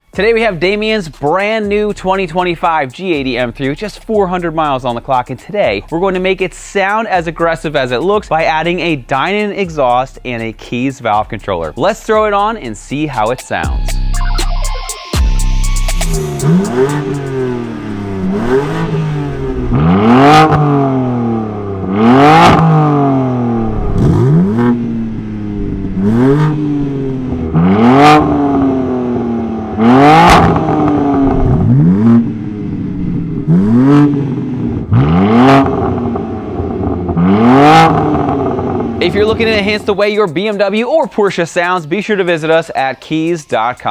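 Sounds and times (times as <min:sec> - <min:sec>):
car engine revving: 0:15.2 - 0:40.1.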